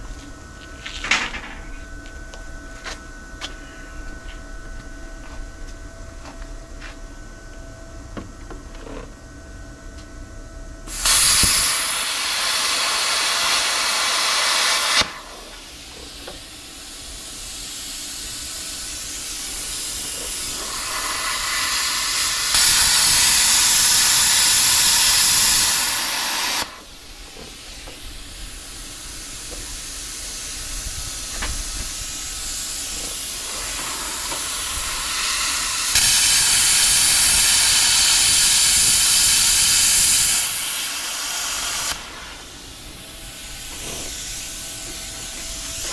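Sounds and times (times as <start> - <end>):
loud hissing rush: 10.9 - 45.9.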